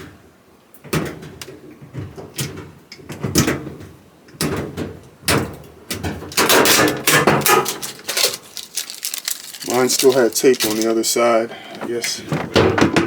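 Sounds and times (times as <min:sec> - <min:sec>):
metal scraping rattle: 0:06.3 - 0:13.0
metal dryer door clunking: 0:11.8 - 0:13.0.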